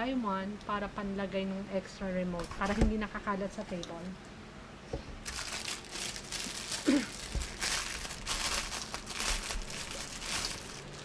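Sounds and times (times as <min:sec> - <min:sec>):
packaging crinkling and rustling: 0:05.2 - 0:11.0.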